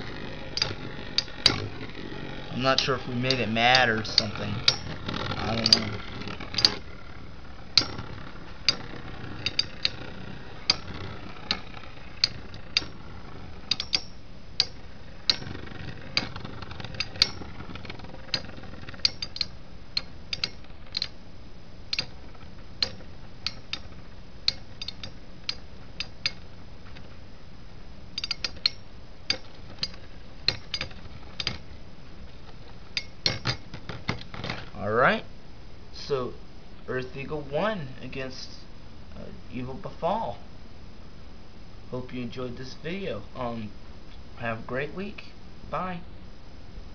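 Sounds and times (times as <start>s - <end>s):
spinning tops clacking together: 0.0s - 21.2s, 21.9s - 26.4s
spinning tops whirring: 0.0s - 27.3s.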